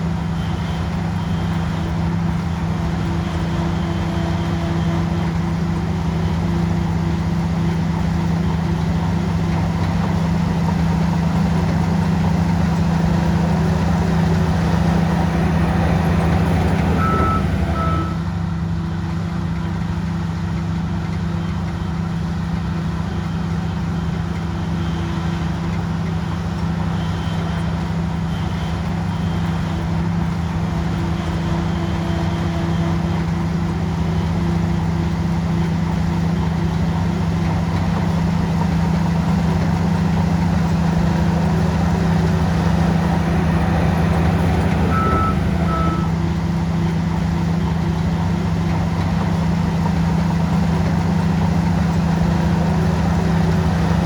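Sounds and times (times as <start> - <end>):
bulldozer diesel engine running: 0.0 - 54.0
reversing alarm beeps: 14.7 - 18.3, 42.2 - 46.4.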